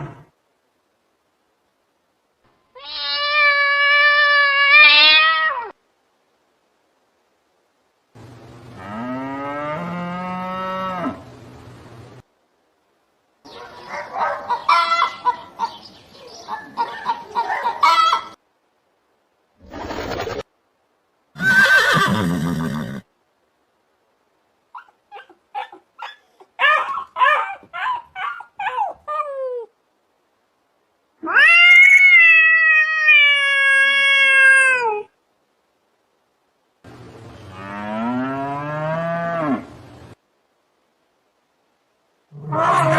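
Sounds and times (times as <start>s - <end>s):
cat meowing: 2.8s - 5.7s, 31.2s - 35.1s
loud high-pitched animal call: 2.8s - 5.8s, 42.3s - 42.9s
cow mooing: 8.8s - 11.3s, 37.5s - 39.7s.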